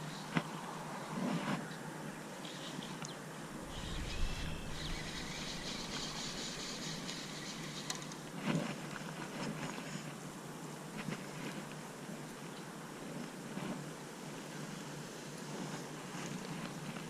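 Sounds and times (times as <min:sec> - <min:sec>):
faint bird chirps: 0:02.4 - 0:08.0
wind noise: 0:03.6 - 0:07.1.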